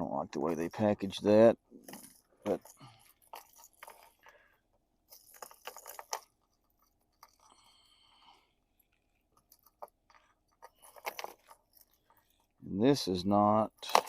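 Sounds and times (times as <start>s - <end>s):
fishing lures clicking and rustling: 1.8s - 12.6s, 13.7s - 14.0s
packaging scraping rustle: 8.8s - 12.5s.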